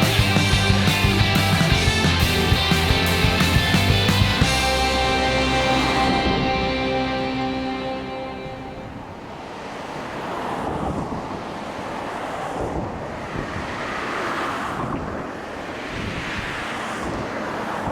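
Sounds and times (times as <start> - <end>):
lake waves: 8.3 - 17.9.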